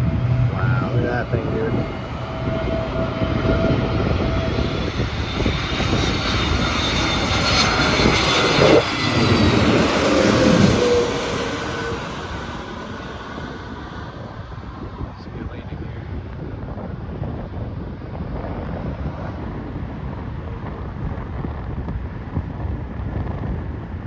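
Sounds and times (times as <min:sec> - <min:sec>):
whining tone dropping in pitch: 0:00.0 - 0:14.4
jet airliner passing by: 0:00.0 - 0:24.0.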